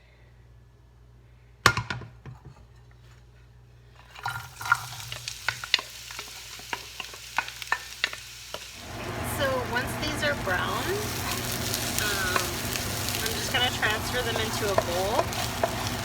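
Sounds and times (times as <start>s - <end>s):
utensil scraping a pan: 4.0s - 8.6s, 10.5s - 16.0s
food sizzling in a pan: 4.0s - 16.0s.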